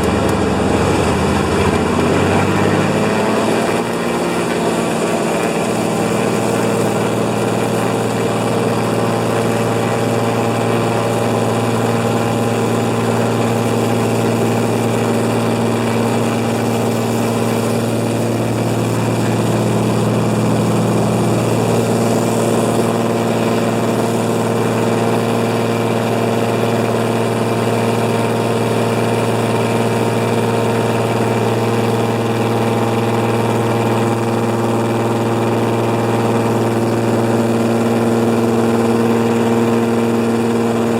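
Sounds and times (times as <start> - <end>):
propeller plane engine drone: 0.0 - 40.9.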